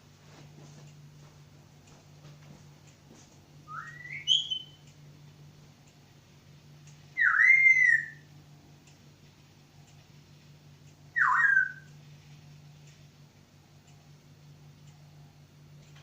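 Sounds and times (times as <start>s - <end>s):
bird whistling: 3.7s - 4.8s, 7.2s - 8.2s, 11.1s - 11.9s.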